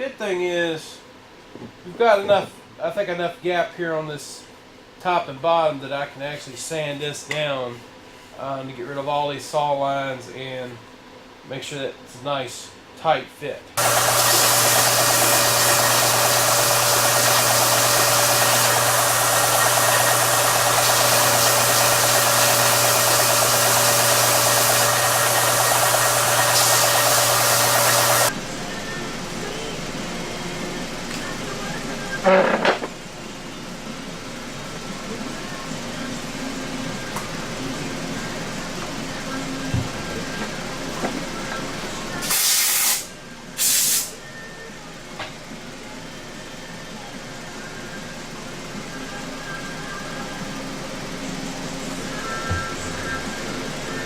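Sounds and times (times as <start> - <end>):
electric sander on wood: 13.8 - 28.3
loud hiss bursts: 13.8 - 28.3, 42.2 - 44.2.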